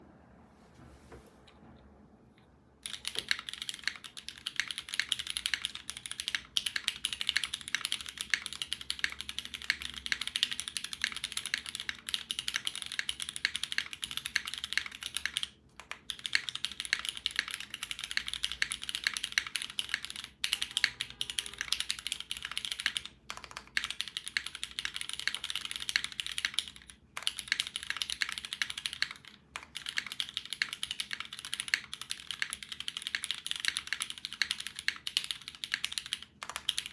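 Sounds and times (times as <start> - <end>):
fast typing on mechanical keyboard: 2.8 - 36.9.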